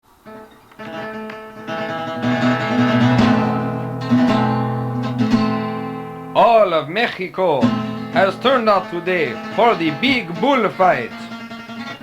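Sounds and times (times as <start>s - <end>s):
acoustic guitar strumming chords: 0.0s - 12.0s.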